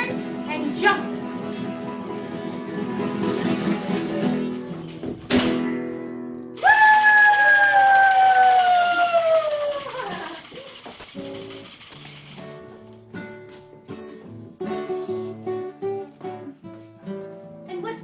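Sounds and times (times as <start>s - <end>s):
live acoustic song: 0.0s - 18.0s
jangling percussion: 4.5s - 14.2s.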